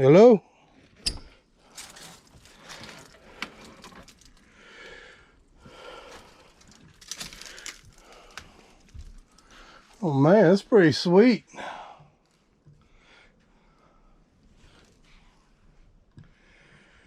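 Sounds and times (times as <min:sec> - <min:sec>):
camper creaking: 0:00.8 - 0:04.5, 0:06.1 - 0:08.4.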